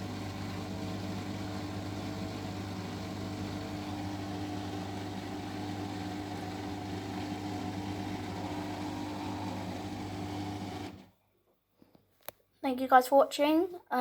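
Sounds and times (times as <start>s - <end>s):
washing machine humming: 0.0s - 11.1s.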